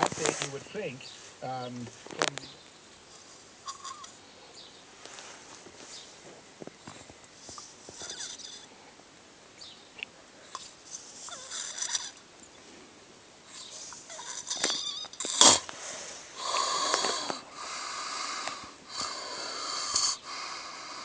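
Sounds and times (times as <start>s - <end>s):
person snoring: 14.1s - 21.0s.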